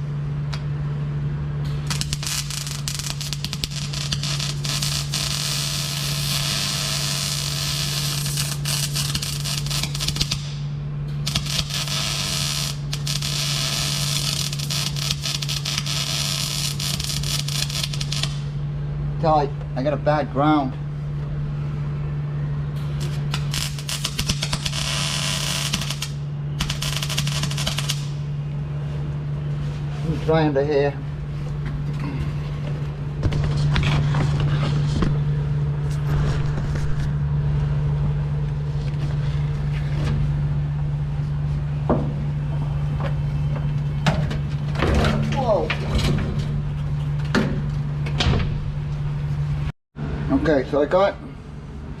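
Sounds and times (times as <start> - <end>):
constant low hum: 0.0 - 52.0
welding arc crackling hiss: 1.7 - 18.6, 22.9 - 28.3.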